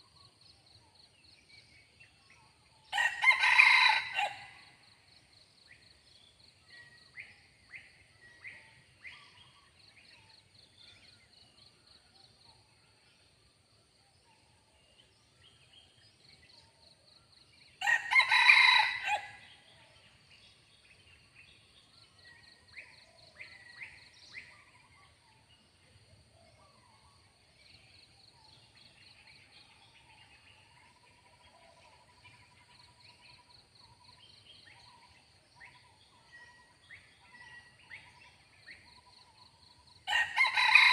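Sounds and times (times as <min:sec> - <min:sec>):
rooster crowing: 0:02.9 - 0:04.6, 0:17.8 - 0:19.4, 0:40.1 - 0:40.9.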